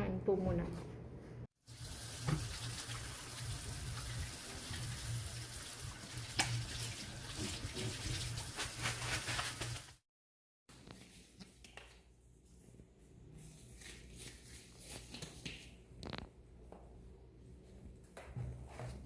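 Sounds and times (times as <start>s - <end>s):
tap water running into sink: 1.7s - 8.6s.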